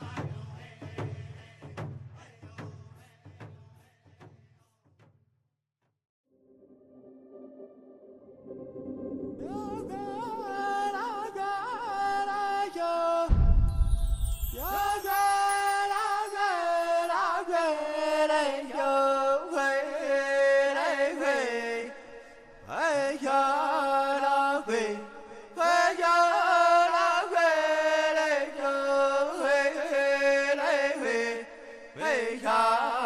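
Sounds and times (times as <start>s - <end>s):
person singing a chant-like melody: 9.3s - 33.0s
low thump: 13.3s - 14.8s.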